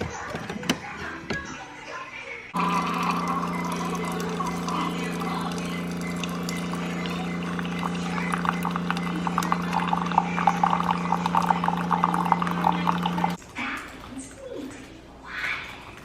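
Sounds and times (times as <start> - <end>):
liquid crackling or bubbling: 2.6 - 13.4
steady hum: 2.6 - 13.4.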